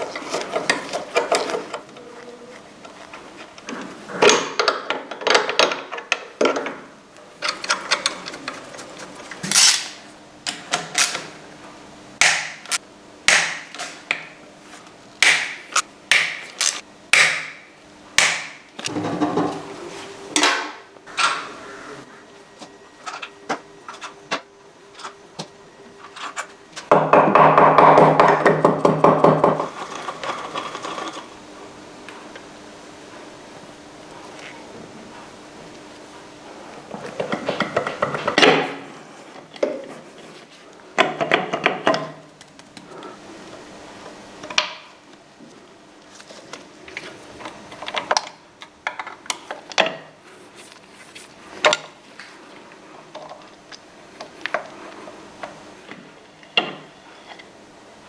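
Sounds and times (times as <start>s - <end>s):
hammer knocking on metal: 26.9s - 29.7s.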